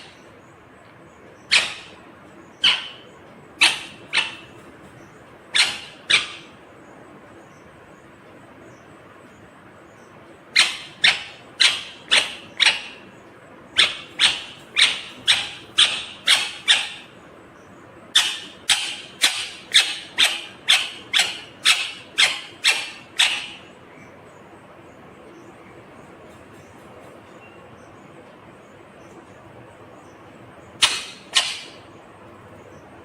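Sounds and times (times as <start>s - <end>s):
parakeet calling: 0.0s - 7.7s, 9.9s - 24.2s, 30.0s - 32.9s.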